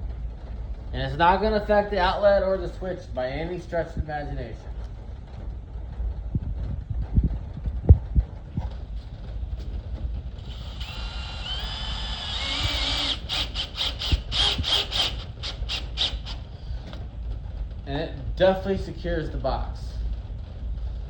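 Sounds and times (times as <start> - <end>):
power drill driving screws: 10.4 - 16.4.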